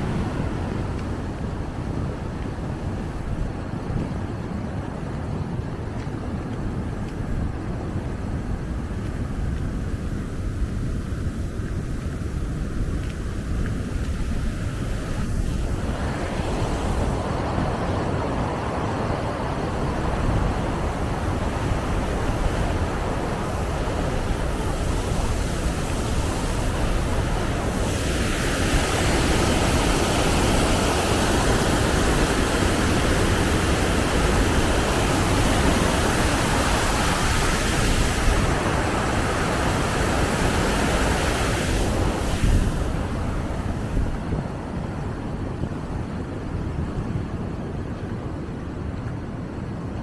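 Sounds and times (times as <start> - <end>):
wind rumbling on microphone: 0.0 - 50.0.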